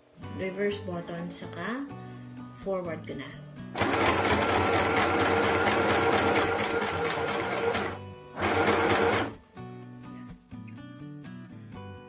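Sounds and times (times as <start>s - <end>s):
background music: 0.0s - 12.0s
sewing machine stitching: 3.8s - 9.4s.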